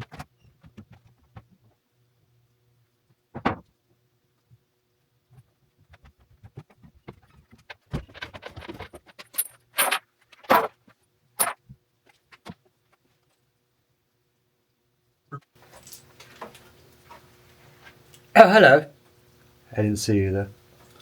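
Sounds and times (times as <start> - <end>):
metal objects clinking: 8.5 - 10.8, 15.6 - 16.1.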